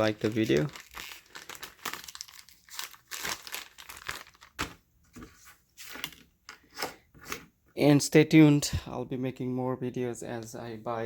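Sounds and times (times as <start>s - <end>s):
packaging crinkling: 0.0s - 4.8s.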